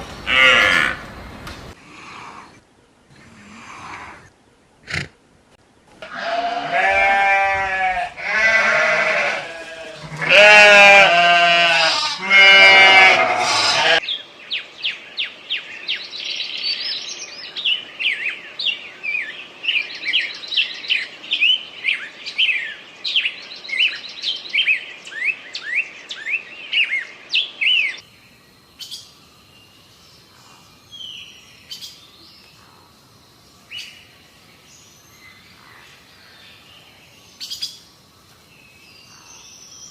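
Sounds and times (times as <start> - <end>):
sheep bleating: 6.0 - 14.0.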